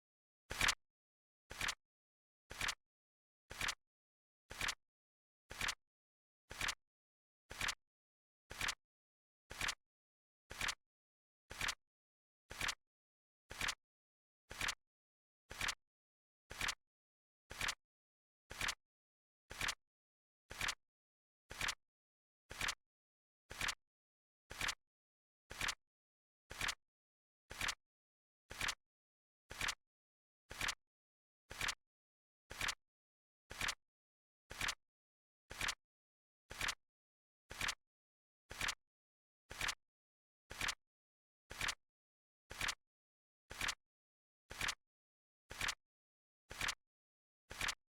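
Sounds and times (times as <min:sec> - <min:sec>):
flip clock clicking: 0:46.6 - 0:46.8.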